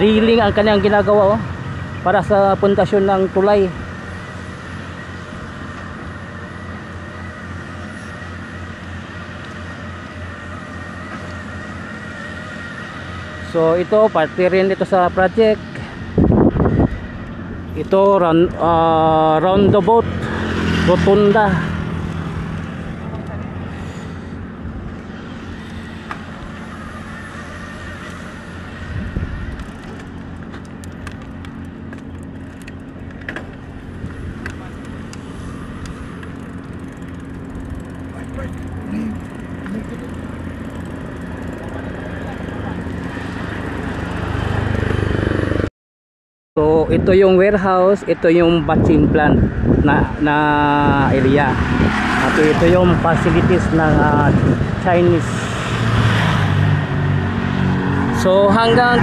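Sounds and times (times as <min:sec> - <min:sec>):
engine running: 0:00.0 - 0:45.7, 0:48.8 - 0:59.0
road noise: 0:00.0 - 0:45.7, 0:46.6 - 0:59.0
high-pitched whine: 0:20.7 - 0:36.8.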